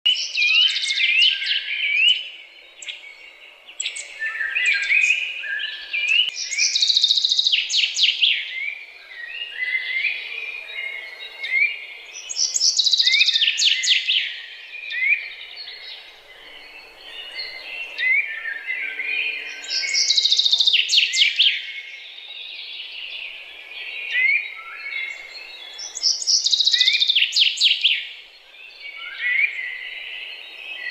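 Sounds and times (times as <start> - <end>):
songbirds singing: 0.1 - 30.9.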